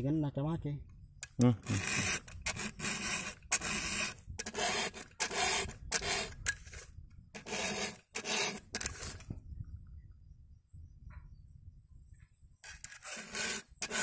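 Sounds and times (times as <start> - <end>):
hand file rasping on chainsaw chain: 1.6 - 9.2, 12.7 - 14.0.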